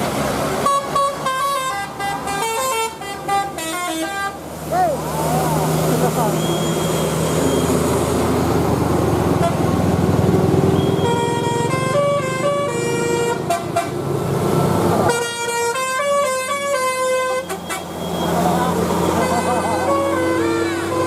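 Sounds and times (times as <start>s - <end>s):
bus engine and road noise: 0.0s - 21.0s
multi-tone bus air horn tune: 0.6s - 4.5s, 9.4s - 9.7s, 10.8s - 14.0s, 15.0s - 18.4s, 19.0s - 21.0s.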